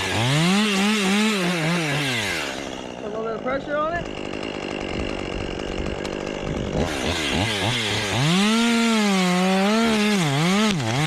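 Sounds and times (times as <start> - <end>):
chainsaw revving: 0.0 - 11.0.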